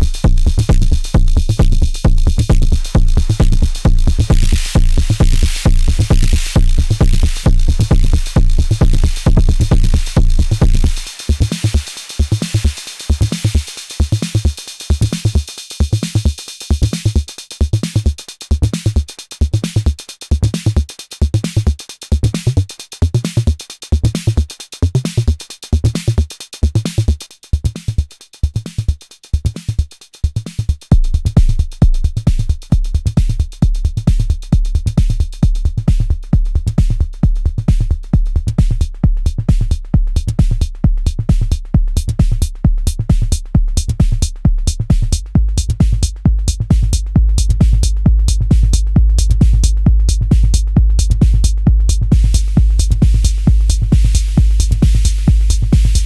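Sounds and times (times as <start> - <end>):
deep bass tone: 0.0 - 11.0, 30.9 - 56.0
kick drum pulse: 0.0 - 24.4, 30.2 - 56.0
drum machine beat: 0.0 - 56.0
fast hi-hats: 0.0 - 56.0.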